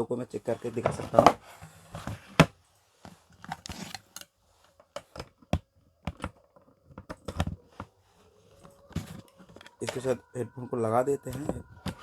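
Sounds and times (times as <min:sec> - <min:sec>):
plastic clicks and knocks: 0:04.9 - 0:07.9.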